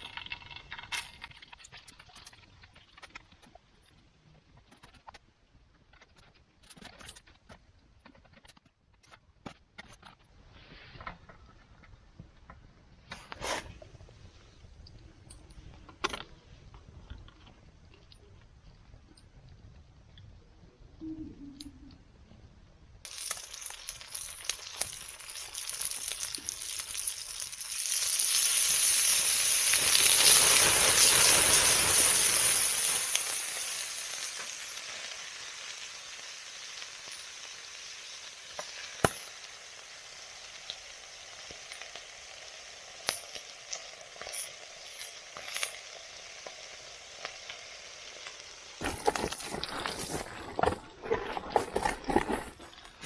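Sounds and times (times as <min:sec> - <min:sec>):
food sizzling in a pan: 0:23.1 - 0:50.5.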